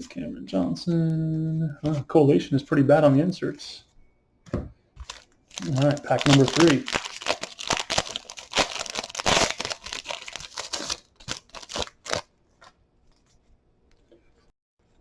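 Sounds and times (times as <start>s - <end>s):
wrapper tearing and crinkling: 5.0s - 12.3s.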